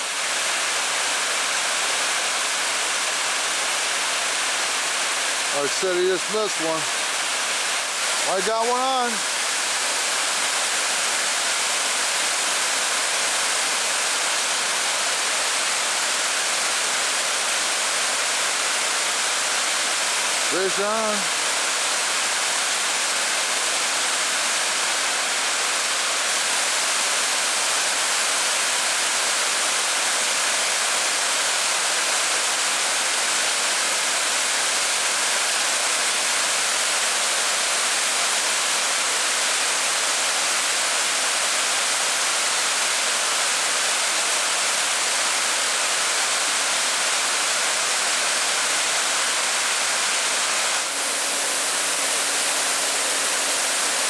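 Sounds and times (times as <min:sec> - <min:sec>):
water rushing over dam: 0:00.0 - 0:54.0.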